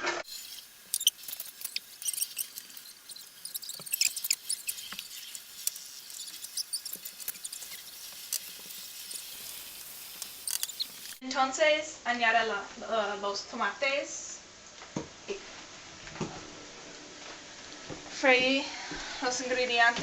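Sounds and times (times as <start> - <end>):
crackles and pops of frying: 0.0 - 11.2
onions sizzling in hot oil: 0.2 - 11.2.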